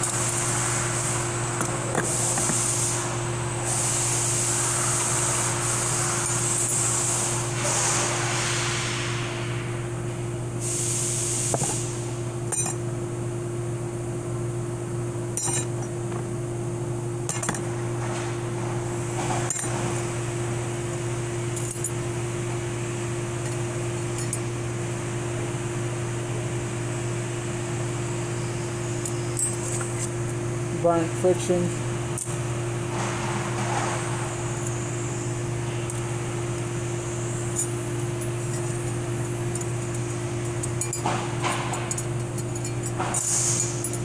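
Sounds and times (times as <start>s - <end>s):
steady background hum: 0.0s - 44.0s
metal plates clinking: 15.4s - 15.9s.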